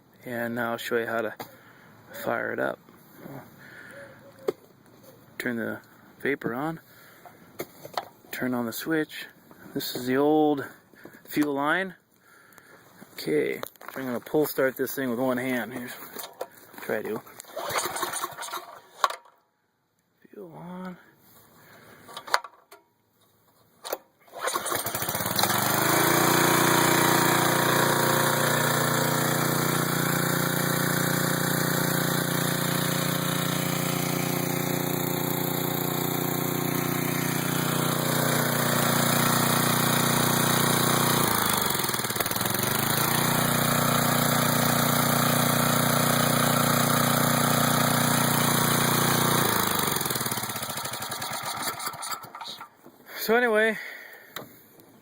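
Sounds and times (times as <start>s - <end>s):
generator engine running: 17.0s - 18.8s, 24.3s - 52.7s
pull-start cord tug: 17.4s - 19.3s, 23.9s - 52.7s.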